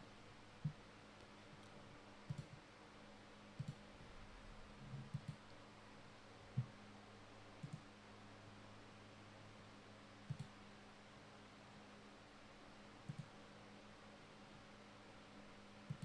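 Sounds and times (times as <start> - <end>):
low electrical hum: 0.0 - 16.0
faint short clicks: 13.1 - 13.3.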